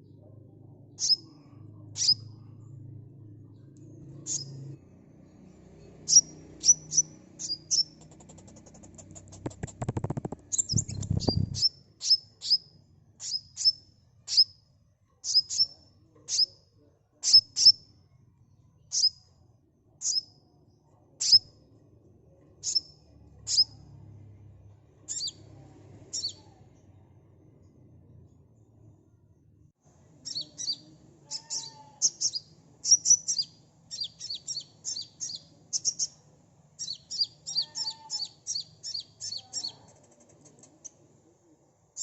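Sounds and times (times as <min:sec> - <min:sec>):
faint low hum: 0:00.0 - 0:42.0
bird chirping: 0:00.9 - 0:02.7, 0:03.5 - 0:16.6, 0:17.2 - 0:17.9, 0:18.8 - 0:19.3, 0:20.0 - 0:20.5, 0:21.2 - 0:21.6, 0:22.6 - 0:24.1, 0:24.8 - 0:26.6, 0:30.2 - 0:39.9
bird rattling trill: 0:06.1 - 0:11.7.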